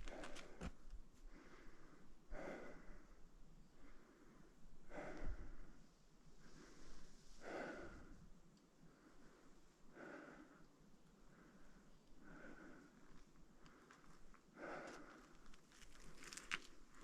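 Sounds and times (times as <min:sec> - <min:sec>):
heavy breathing: 0:06.4 - 0:08.2, 0:11.3 - 0:15.4.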